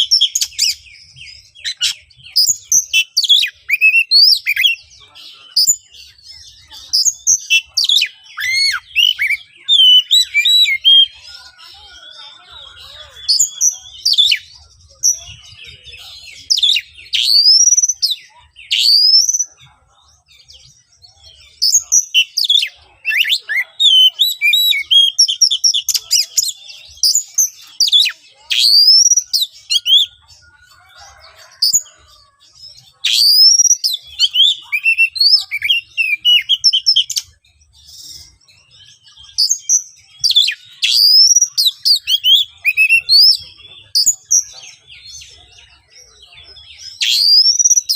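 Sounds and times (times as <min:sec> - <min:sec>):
magpie-robin singing: 0:00.0 - 0:47.9.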